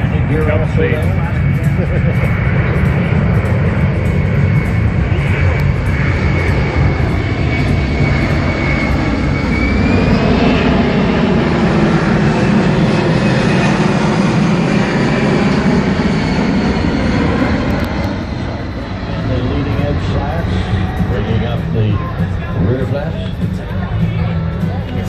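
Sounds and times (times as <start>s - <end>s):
jet engines roaring: 0.0s - 25.0s.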